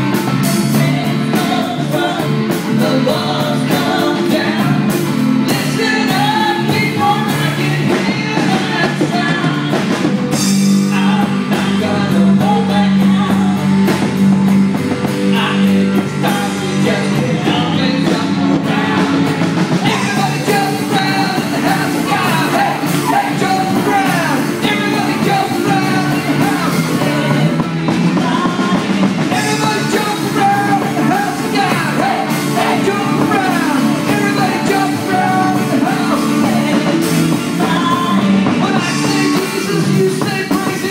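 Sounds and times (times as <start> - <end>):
worship band playing with singing: 0.0 - 40.9.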